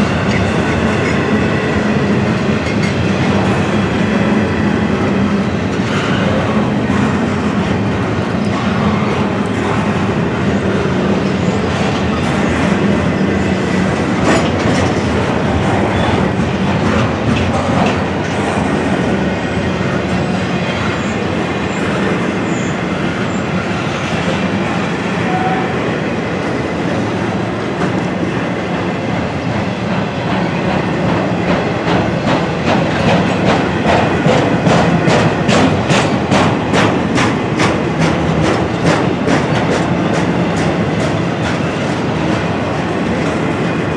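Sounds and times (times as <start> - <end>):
freight train rolling past: 0.0 - 43.9
wheels clicking over rail joints: 9.4 - 22.3.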